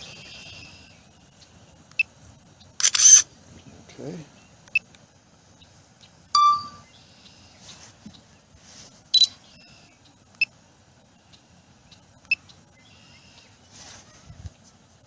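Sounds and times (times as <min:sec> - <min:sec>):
camera shutter click: 0:02.8 - 0:03.2
short electronic beep: 0:06.4 - 0:06.9.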